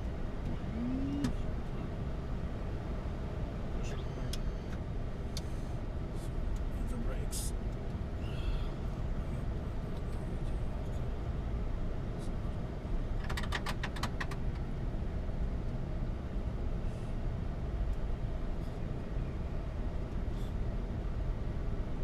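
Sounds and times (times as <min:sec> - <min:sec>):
airplane engines idling: 0:00.0 - 0:22.0.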